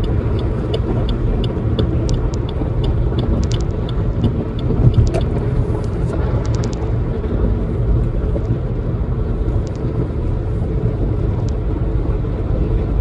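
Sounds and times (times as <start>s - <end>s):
faint light ticks: 0.0s - 6.8s, 9.6s - 9.9s
car interior road rumble: 0.0s - 13.0s.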